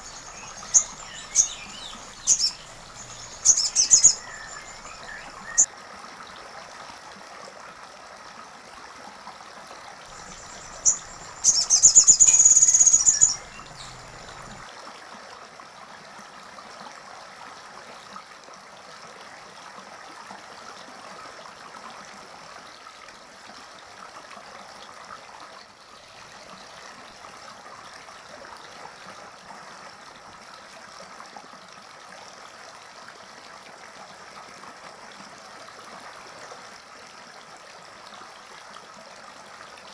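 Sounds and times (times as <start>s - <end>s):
bird call: 0.0s - 5.7s, 10.1s - 14.6s
bird rapid trill: 0.0s - 5.7s, 10.1s - 14.6s
faint hiss: 0.0s - 5.7s, 10.1s - 14.6s.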